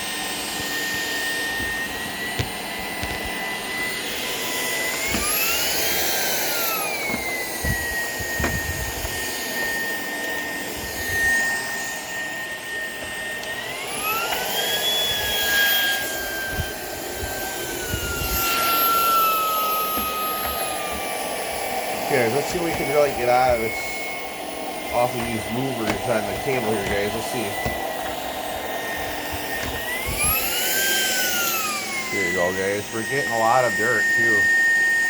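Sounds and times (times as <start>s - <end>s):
stick vacuum motor whine: 0.0s - 35.0s.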